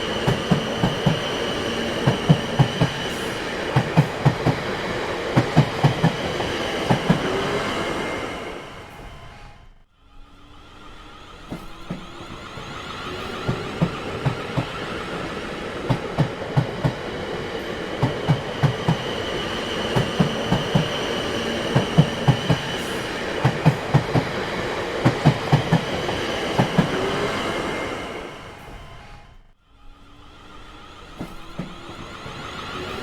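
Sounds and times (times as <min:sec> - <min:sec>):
train wheels clacking over rail joints: 0:00.0 - 0:07.6, 0:11.4 - 0:27.4
train rumble: 0:00.0 - 0:33.0.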